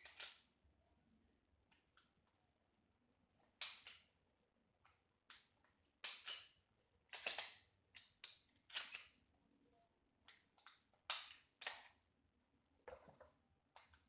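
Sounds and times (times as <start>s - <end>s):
pistol parts clicking and scraping: 0.0s - 0.5s, 3.5s - 4.1s, 4.8s - 9.2s, 10.3s - 12.0s.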